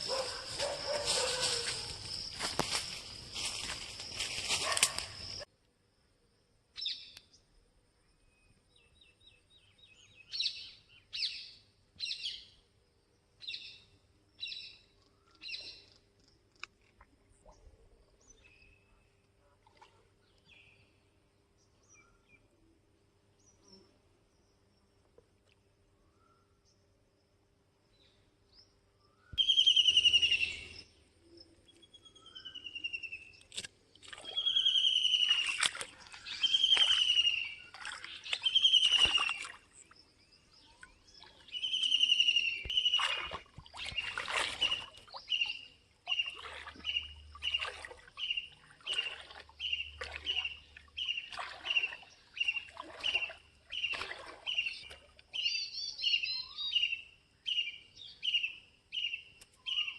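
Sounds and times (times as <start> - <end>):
bird calling with whistled notes: 9.0 - 12.6, 29.1 - 31.0, 31.7 - 33.5, 34.2 - 59.9
bird twittering: 29.4 - 30.9, 34.3 - 39.6, 41.2 - 59.9.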